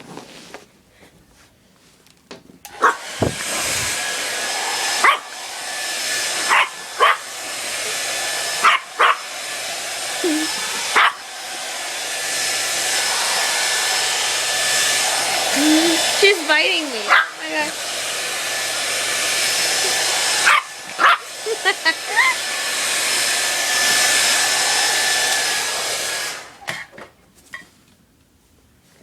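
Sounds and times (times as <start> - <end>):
hair dryer blowing: 2.6 - 27.0
puppy barking: 2.8 - 3.1, 5.0 - 5.4, 6.4 - 7.3, 8.6 - 9.3, 10.9 - 11.2, 17.1 - 17.4, 20.4 - 21.3.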